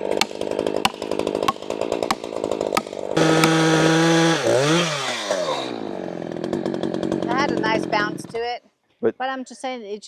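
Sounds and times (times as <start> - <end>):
chainsaw cutting log: 0.0 - 6.1.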